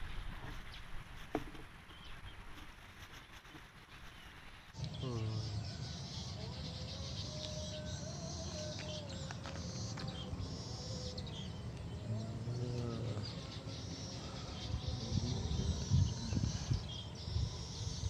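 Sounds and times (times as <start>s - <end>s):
birds chirping: 4.0s - 18.0s
low pitched bird call: 4.8s - 18.0s.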